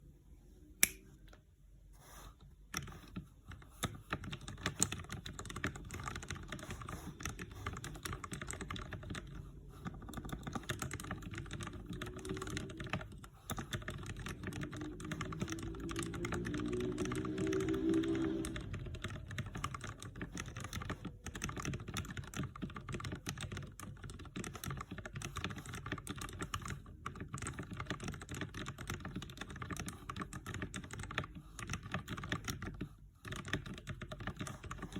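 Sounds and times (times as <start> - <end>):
single sharp click: 0.8 - 1.0
mechanical keyboard typing: 2.7 - 34.9.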